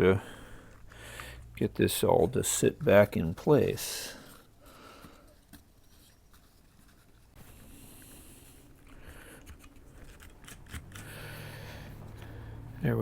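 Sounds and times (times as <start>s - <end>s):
plastic parts clicking and scraping: 3.8s - 7.7s, 8.6s - 12.4s.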